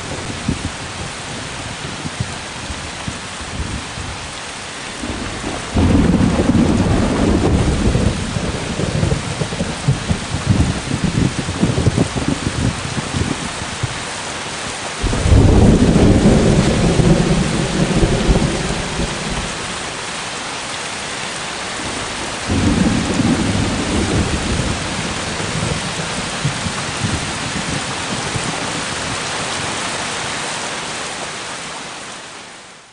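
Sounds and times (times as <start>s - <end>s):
heavy rain: 0.0s - 32.9s
rolling thunder: 5.0s - 13.4s, 15.0s - 20.1s, 21.8s - 28.6s.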